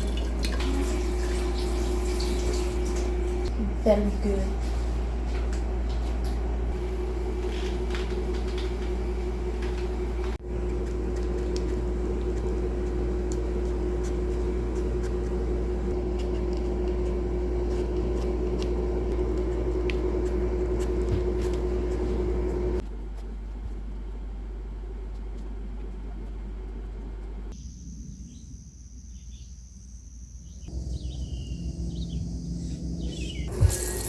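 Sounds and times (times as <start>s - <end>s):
small appliance motor humming: 4.7s - 22.8s, 30.7s - 34.0s.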